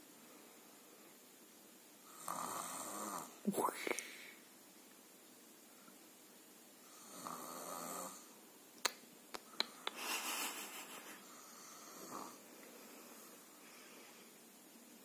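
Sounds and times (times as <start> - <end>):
baby snoring: 6.9 - 8.3, 11.4 - 12.4.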